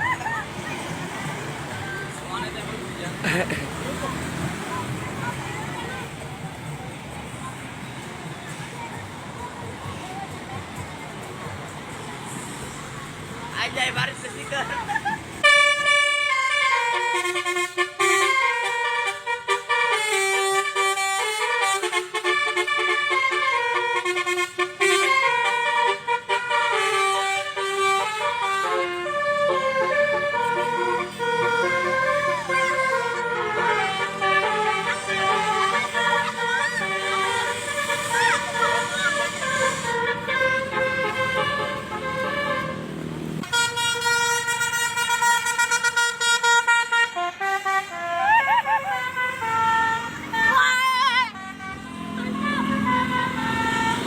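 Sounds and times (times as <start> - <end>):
horn playing a melody: 15.4 - 54.0.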